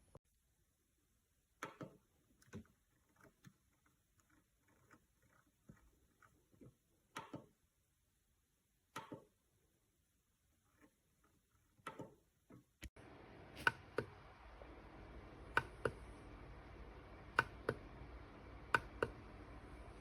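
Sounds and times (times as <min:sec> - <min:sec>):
faint steady hiss: 0:00.0 - 0:20.0
sharp clicks in pairs: 0:15.5 - 0:16.0, 0:17.3 - 0:17.9, 0:18.8 - 0:19.2.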